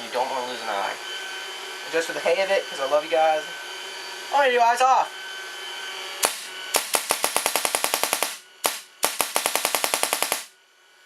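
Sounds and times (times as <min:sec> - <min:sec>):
paintball marker firing: 0:06.2 - 0:10.5.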